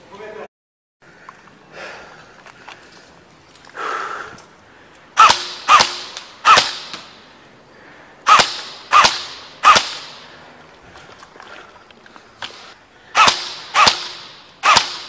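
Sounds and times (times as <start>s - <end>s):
airsoft gun shots: 5.2s - 7.2s, 8.3s - 10.2s, 12.4s - 15.0s.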